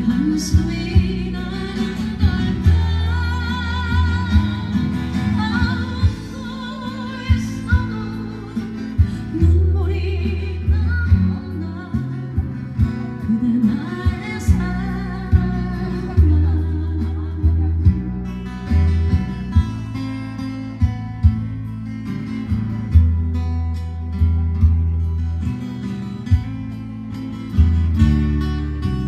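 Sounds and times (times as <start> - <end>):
person singing ballad with vibrato: 0.0 - 21.4
guitar accompaniment: 0.0 - 29.0
low bass notes: 0.0 - 29.0.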